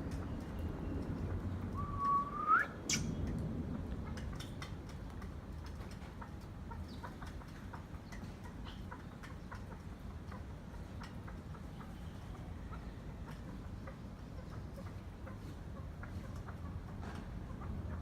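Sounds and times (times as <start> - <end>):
partridge whistled call: 1.8 - 3.1.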